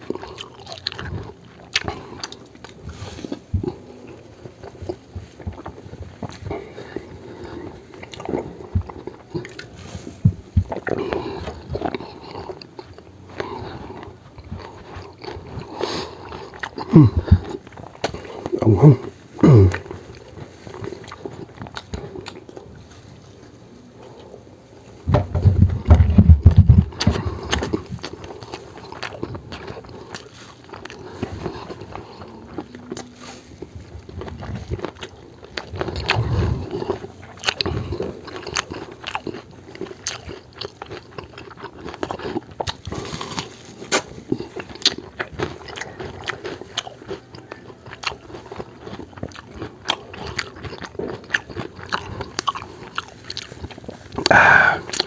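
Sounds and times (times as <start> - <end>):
crisp bites and wet chewing: 0.0 - 23.0, 25.9 - 55.0
clicking mouth sounds: 54.2 - 55.0.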